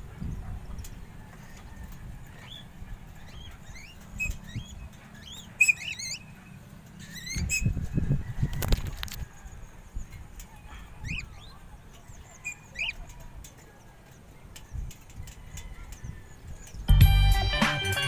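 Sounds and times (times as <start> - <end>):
wind rumble on microphone: 0.0 - 5.0, 7.2 - 12.3
short rising bird chirps: 3.3 - 6.4.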